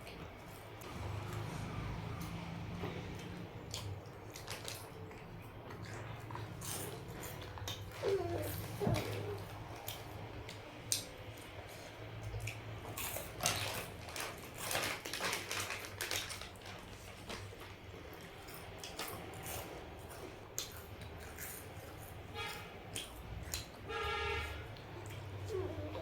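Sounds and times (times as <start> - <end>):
person chewing crunchy snack: 3.0 - 10.1, 10.9 - 23.8.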